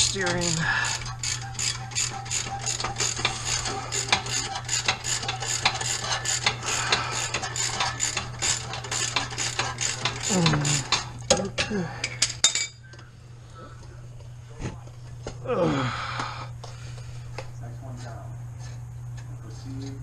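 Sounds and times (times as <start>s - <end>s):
ratchet wrench clicking: 0.0s - 11.1s
steady low hum: 0.0s - 20.0s.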